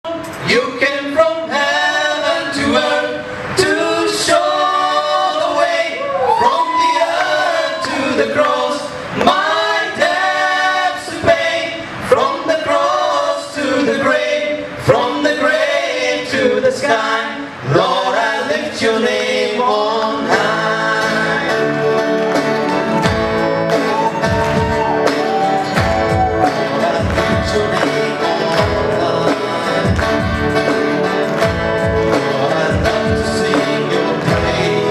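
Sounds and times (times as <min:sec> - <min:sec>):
guitar: 0:00.0 - 0:04.6, 0:18.5 - 0:34.9
person singing: 0:17.7 - 0:31.1, 0:31.9 - 0:34.9
keyboard chords: 0:21.5 - 0:34.9
electronic beat: 0:22.4 - 0:34.7.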